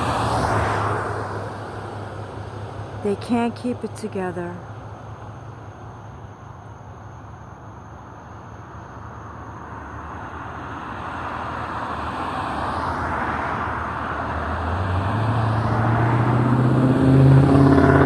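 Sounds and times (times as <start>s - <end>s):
low engine hum: 0.0s - 18.0s
vehicle approaching: 8.8s - 18.0s.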